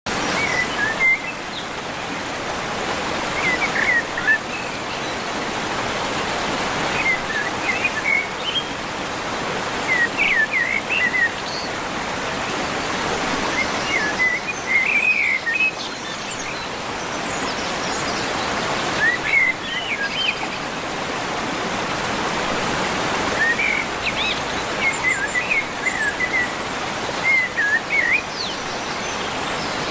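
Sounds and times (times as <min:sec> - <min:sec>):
running water: 0:00.1 - 0:29.9.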